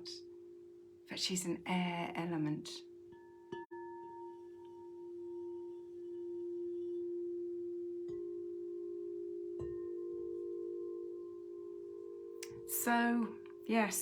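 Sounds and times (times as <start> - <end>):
singing bowl ringing: 2.9 - 14.0
soft bowl strikes: 3.1 - 14.0.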